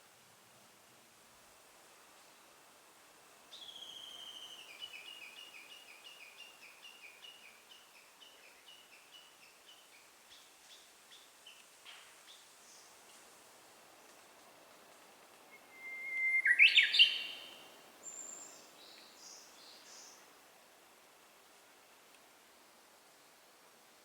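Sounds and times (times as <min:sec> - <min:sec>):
bird whistling call: 0:03.6 - 0:04.8, 0:15.6 - 0:17.6.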